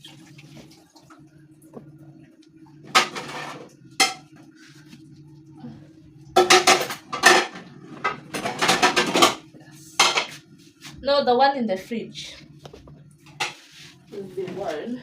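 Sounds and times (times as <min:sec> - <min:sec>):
low steady hum: 0:00.0 - 0:15.0
dishes and cutlery clattering: 0:02.9 - 0:04.4, 0:06.4 - 0:10.4.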